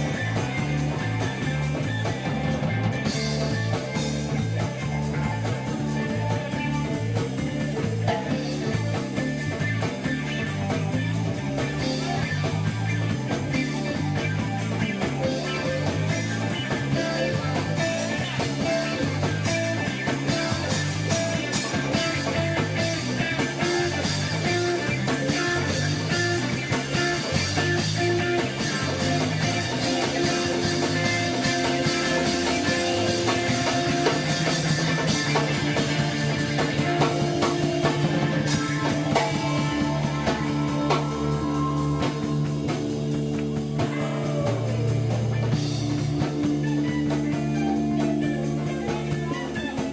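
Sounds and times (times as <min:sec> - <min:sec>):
bass: 0:00.0 - 0:49.9
drum kit: 0:00.0 - 0:49.9
electric guitar: 0:00.0 - 0:49.9.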